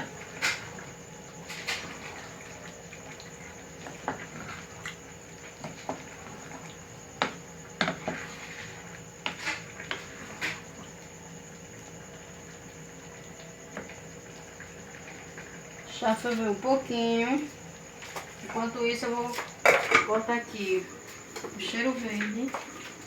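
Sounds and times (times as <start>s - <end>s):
sauce bubbling in pot: 0.0s - 18.4s.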